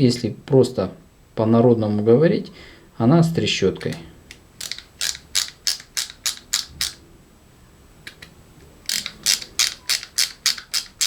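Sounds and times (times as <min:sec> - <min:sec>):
ratchet screwdriver clicking: 0:04.6 - 0:07.0, 0:08.9 - 0:11.0.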